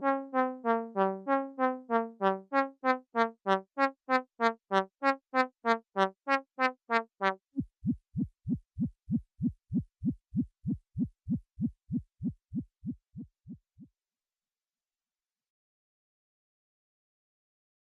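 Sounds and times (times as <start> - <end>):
synthesizer sequenced notes: 0.0 - 8.0
low heartbeat-like synth thump: 7.5 - 13.9.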